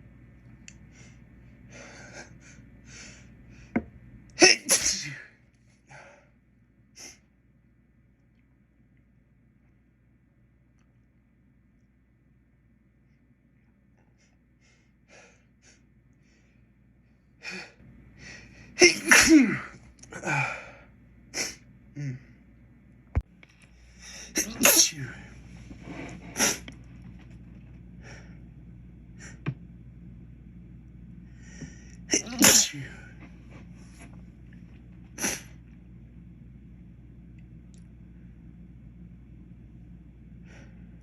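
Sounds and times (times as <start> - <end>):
man sneezing: 4.4 - 5.3, 18.8 - 19.8, 24.4 - 25.2, 32.1 - 33.1
breaths: 5.8 - 6.4, 17.4 - 18.8, 20.1 - 20.9, 31.2 - 32.0, 40.3 - 41.0.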